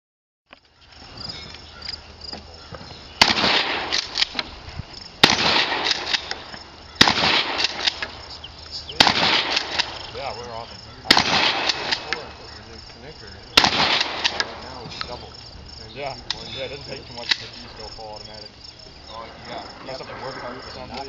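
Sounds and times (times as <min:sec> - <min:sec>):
shotgun shots with echo: 0:03.2 - 0:04.5, 0:05.2 - 0:08.2, 0:08.9 - 0:10.3, 0:11.0 - 0:12.5, 0:13.6 - 0:14.9.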